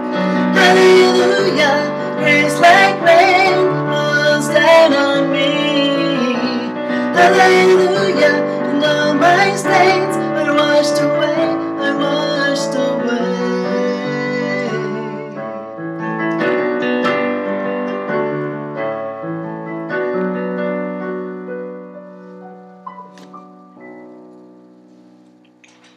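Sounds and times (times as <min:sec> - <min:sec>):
slow piano hymn: 0:00.0 - 0:25.9.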